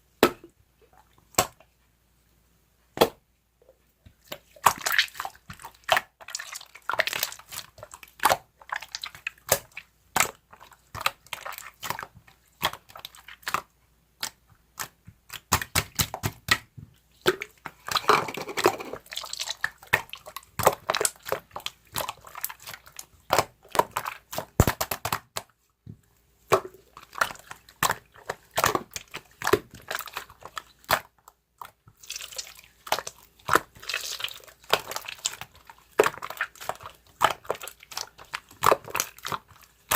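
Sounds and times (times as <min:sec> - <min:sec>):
slime squelching and popping: 0:04.1 - 0:25.6, 0:26.4 - 0:39.9.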